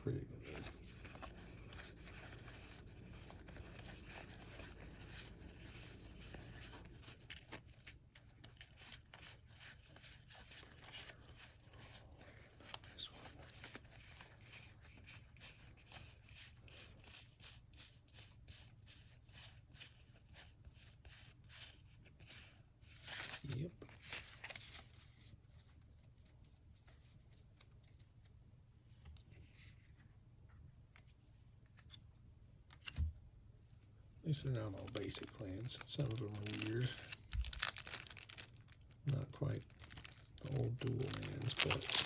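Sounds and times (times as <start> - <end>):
trading cards flipped through: 34.7 - 42.0.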